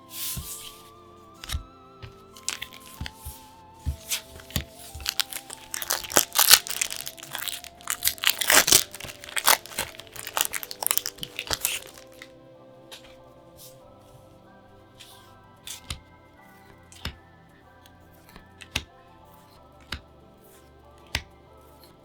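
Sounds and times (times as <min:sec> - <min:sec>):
soft background music: 0:00.0 - 0:22.0
packaging crinkling and tearing: 0:02.2 - 0:03.2, 0:03.9 - 0:12.3.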